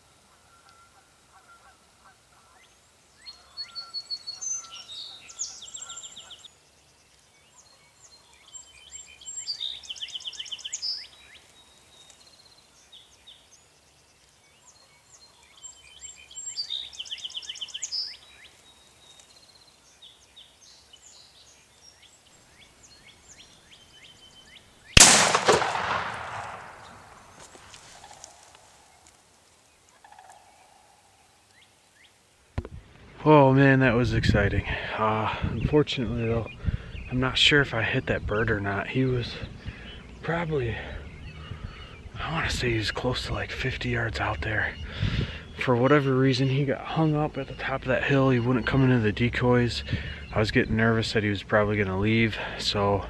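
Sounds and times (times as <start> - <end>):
songbirds trilling and chirping: 0.4 - 32.3, 38.5 - 43.2
shotgun blast with echo: 25.0 - 28.4.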